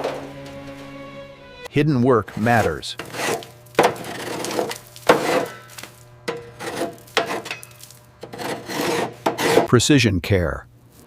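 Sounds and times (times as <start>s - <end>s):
hand tool scraping strokes: 2.2s - 9.7s.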